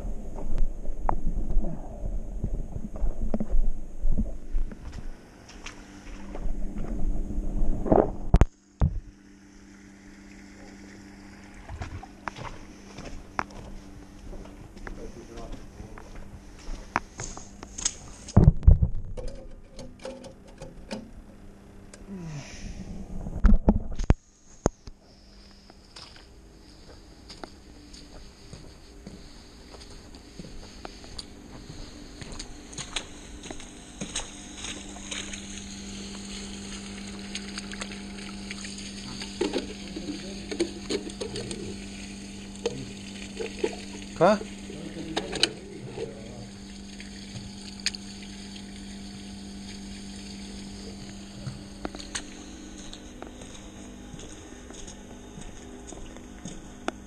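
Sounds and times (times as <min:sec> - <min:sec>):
steady low hum: 0:00.0 - 0:57.0
falling gurgle: 0:09.6 - 0:12.6, 0:34.1 - 0:52.4.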